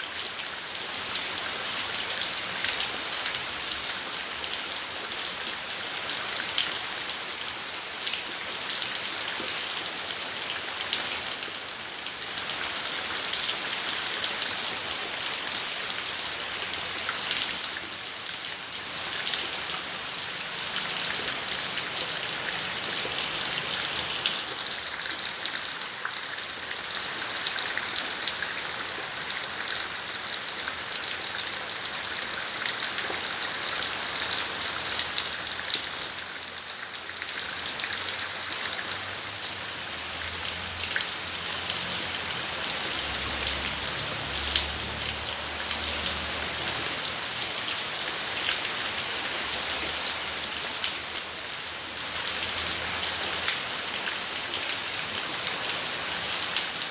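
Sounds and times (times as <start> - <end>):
rain falling: 0.0 - 56.9.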